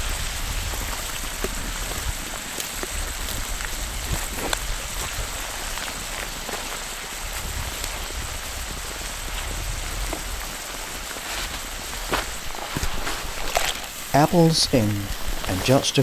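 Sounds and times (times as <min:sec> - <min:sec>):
campfire pops and crackles: 0:00.0 - 0:16.0
food sizzling in a pan: 0:00.0 - 0:16.0.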